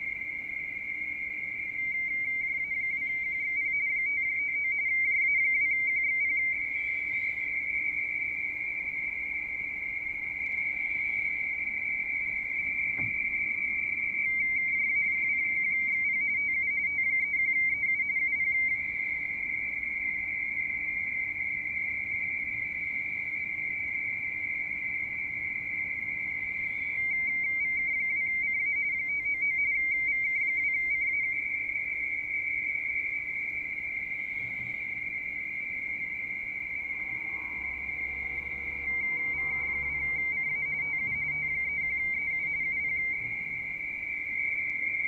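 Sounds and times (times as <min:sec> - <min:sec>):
whistling radio tone: 0:00.0 - 0:45.0
rapid two-tone warble: 0:36.4 - 0:44.0.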